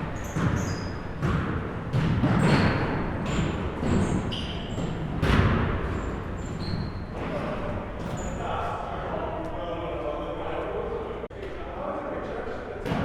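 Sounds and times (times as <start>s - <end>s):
basketballs bouncing on gym floor: 0.0s - 8.4s
short high squeaks: 0.1s - 1.1s.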